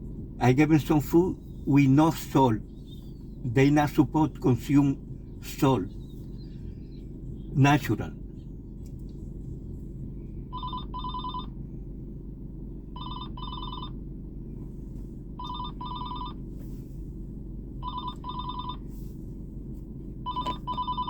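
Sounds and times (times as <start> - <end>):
low rumble: 0.0 - 10.8, 11.4 - 13.1
phone ringing: 10.5 - 11.5, 13.0 - 14.0, 15.4 - 16.4, 17.8 - 18.8, 20.3 - 21.0.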